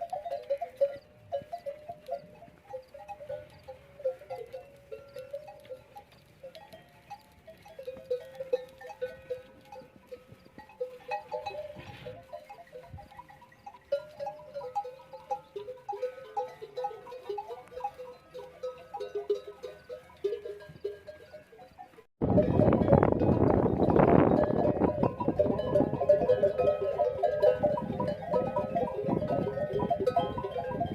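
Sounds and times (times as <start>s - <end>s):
camel bells clanking: 0.0s - 30.9s
rough animal call: 8.4s - 20.6s.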